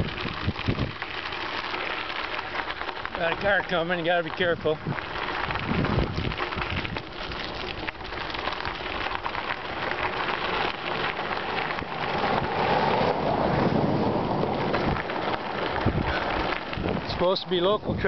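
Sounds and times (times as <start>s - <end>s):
wind on microphone: 0.0s - 1.0s, 4.8s - 7.2s, 11.7s - 18.0s
bicycle tyres crunching on grit: 0.0s - 18.0s
bike clicks and rattles: 0.0s - 18.0s.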